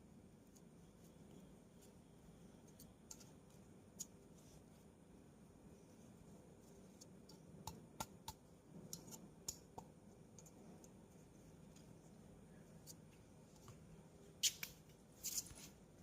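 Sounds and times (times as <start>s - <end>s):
low steady hum: 0.0s - 16.0s
small clicks and taps of parts: 6.9s - 11.0s.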